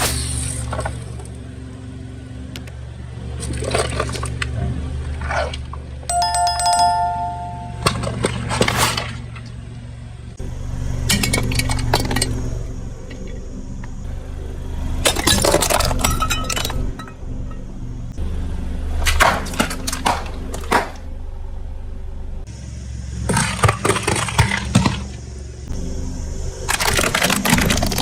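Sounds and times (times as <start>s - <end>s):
glassy clink: 6.1s - 8.0s
steady low hum: 25.2s - 27.8s.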